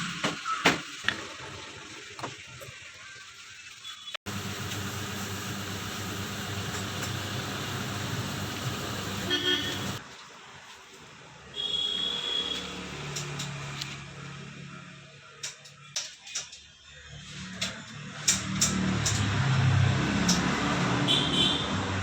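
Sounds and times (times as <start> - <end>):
road traffic engines: 4.3 - 10.6, 18.2 - 22.0
vehicle horn tooting: 9.1 - 10.0, 11.6 - 12.7, 21.1 - 21.8.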